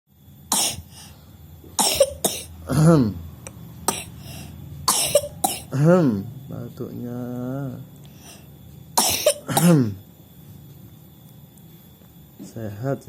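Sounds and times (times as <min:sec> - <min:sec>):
baby coughing: 0:00.5 - 0:00.9, 0:01.8 - 0:02.8, 0:03.9 - 0:05.8, 0:09.0 - 0:10.0.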